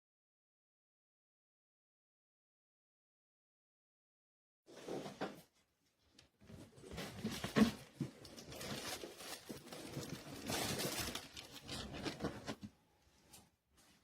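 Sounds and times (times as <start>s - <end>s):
rustling and clicking handling noises: 4.8s - 14.0s.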